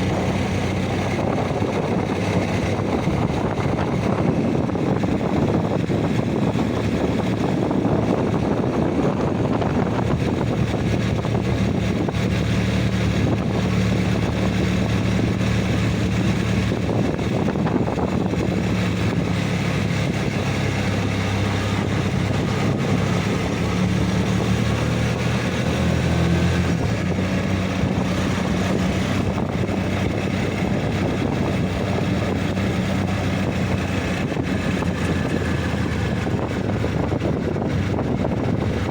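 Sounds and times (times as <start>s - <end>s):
engine running steadily: 0.0s - 38.9s
wind rushing: 0.0s - 38.9s.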